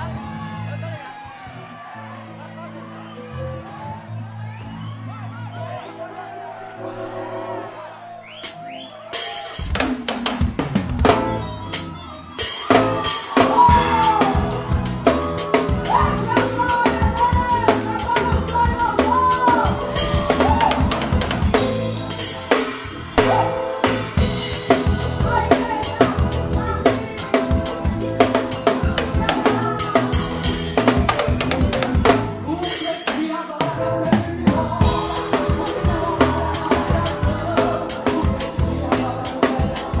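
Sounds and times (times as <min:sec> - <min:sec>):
band playing gospel song: 0:00.0 - 0:40.0
drum kit: 0:08.2 - 0:40.0
gliding melodic lead line: 0:10.9 - 0:33.0, 0:33.8 - 0:40.0.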